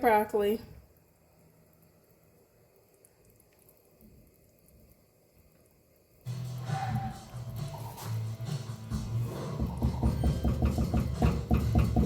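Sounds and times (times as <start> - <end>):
music with bass and drums: 6.3 - 12.0.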